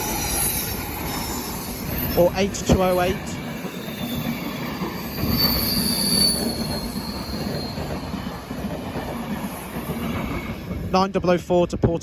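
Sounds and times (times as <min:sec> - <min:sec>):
train wheels rumbling: 0:00.0 - 0:12.0
high-pitched wheel squeal: 0:03.6 - 0:08.3.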